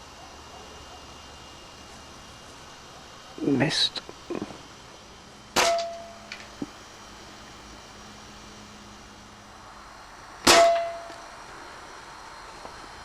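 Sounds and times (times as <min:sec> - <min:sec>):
metallic ring: 0:05.6 - 0:06.3, 0:10.5 - 0:11.3
air rifle shots: 0:10.4 - 0:11.1.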